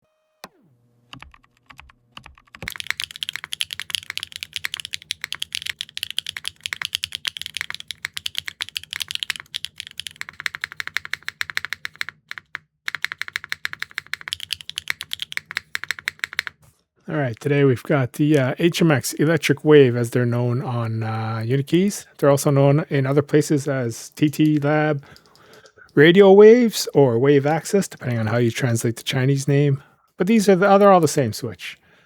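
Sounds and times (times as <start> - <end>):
fast typing on mechanical keyboard: 1.2 - 16.7, 24.2 - 25.7, 27.7 - 29.2.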